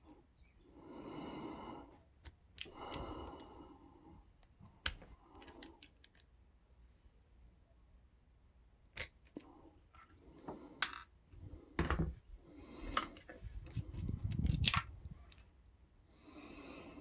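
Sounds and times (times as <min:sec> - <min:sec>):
padlock parts clicking: 0:13.1 - 0:15.5.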